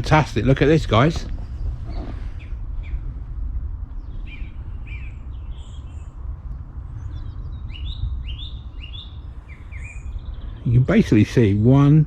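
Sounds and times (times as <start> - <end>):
small birds chirping: 0.0 - 12.0
steady low rumble: 0.0 - 12.0.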